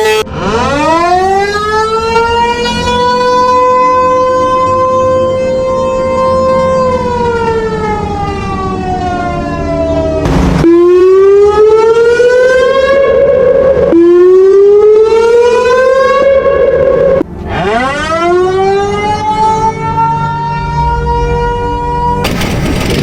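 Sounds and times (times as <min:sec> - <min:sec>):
siren wailing: 0:00.0 - 0:22.2
burst of noise: 0:10.2 - 0:11.3.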